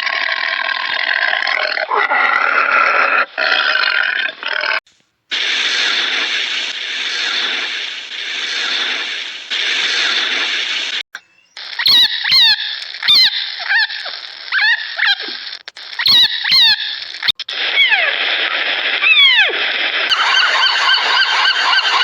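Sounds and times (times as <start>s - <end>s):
rough animal sound: 0.0s - 4.8s
animal wavering call: 19.0s - 22.0s.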